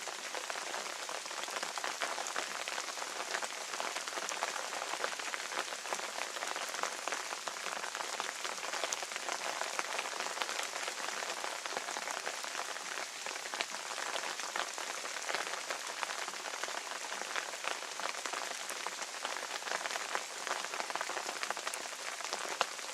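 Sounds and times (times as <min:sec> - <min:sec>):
steady rain falling: 0:00.0 - 0:22.9.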